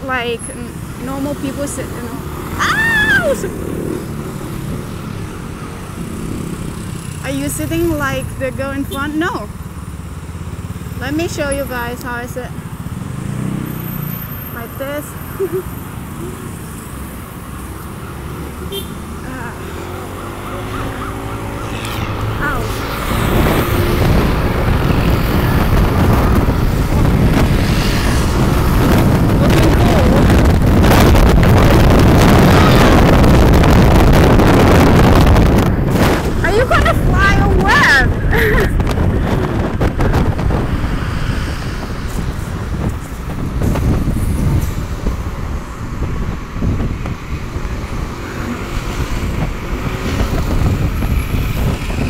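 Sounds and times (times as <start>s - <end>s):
motorbike engine and road noise: 0.0s - 52.0s
wind on microphone: 19.2s - 52.0s.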